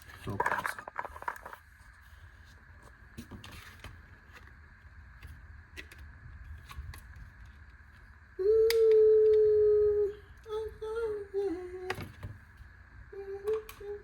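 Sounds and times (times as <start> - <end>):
faint high whine: 0.0 - 14.0
small objects clicking and knocking: 0.2 - 1.6.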